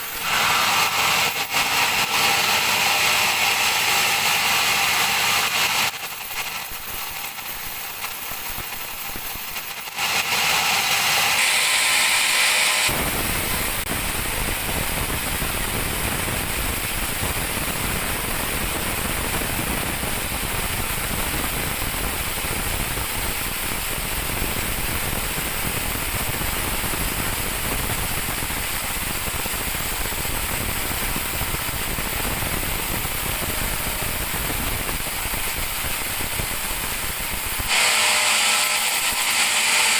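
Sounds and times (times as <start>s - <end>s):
bandsaw cutting through log: 0.0s - 13.9s, 31.0s - 39.9s.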